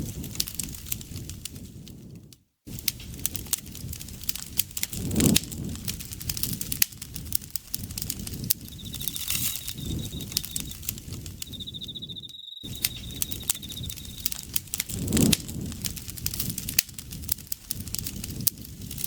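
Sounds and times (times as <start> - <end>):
campfire crackling and popping: 0.0 - 1.9, 2.7 - 19.0
insect trilling: 8.4 - 14.5.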